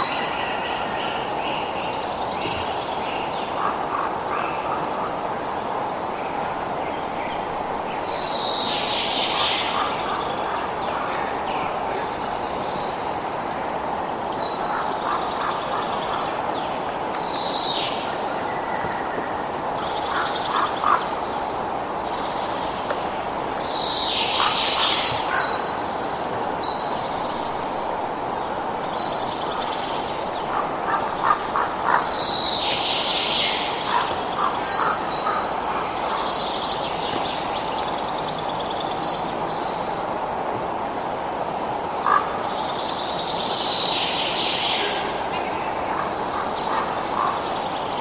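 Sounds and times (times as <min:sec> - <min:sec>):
birds chirping: 0:42.0 - 0:48.0.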